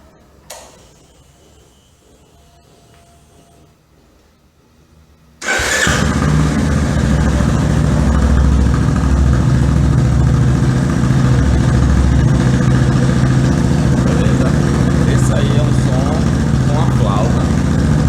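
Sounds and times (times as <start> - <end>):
motorcycle engine idling: 5.4 - 18.0
motorcycle engine starting: 5.4 - 18.0.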